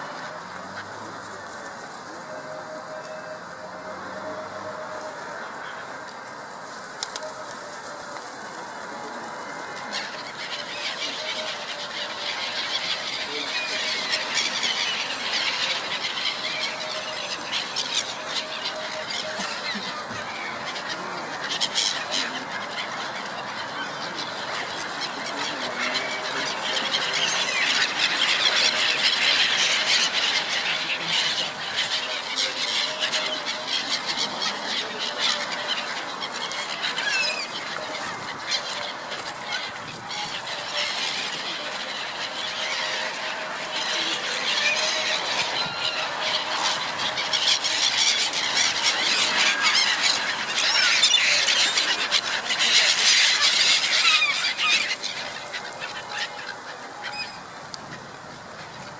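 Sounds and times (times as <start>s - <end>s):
gulls calling: 0.0s - 58.9s.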